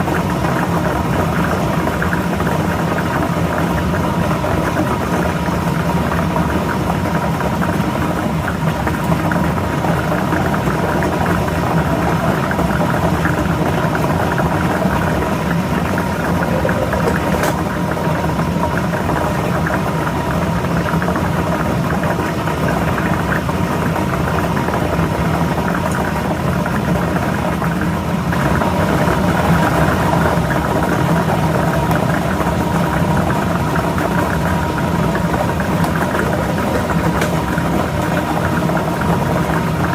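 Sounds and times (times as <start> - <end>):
balls rattling: 16.0 - 17.8.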